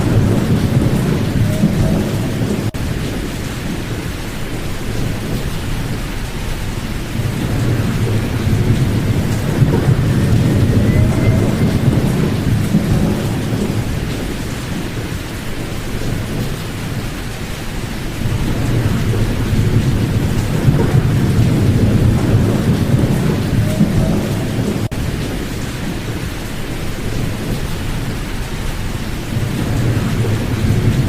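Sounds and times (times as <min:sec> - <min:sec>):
low rolling thunder: 0:00.0 - 0:31.0
rain: 0:00.0 - 0:31.0.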